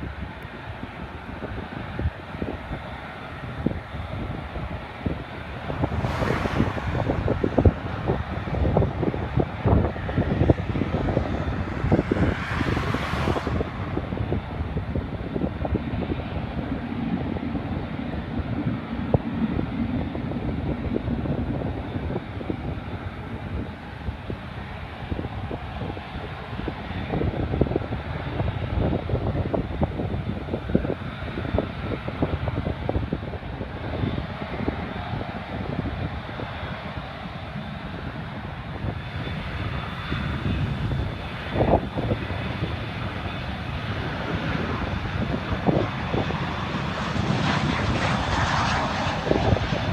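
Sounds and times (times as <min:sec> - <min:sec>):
jet engines droning: 0:00.0 - 0:49.9
wind buffeting microphone: 0:00.0 - 0:49.9.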